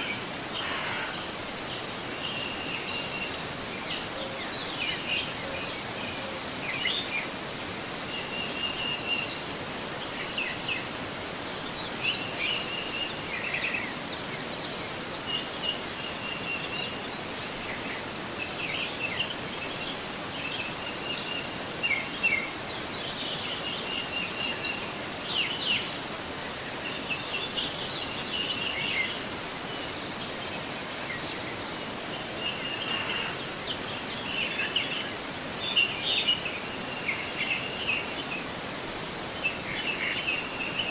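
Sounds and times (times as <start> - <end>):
river flowing: 0.0 - 40.9
birds singing and chirping: 26.7 - 38.6, 39.3 - 40.9.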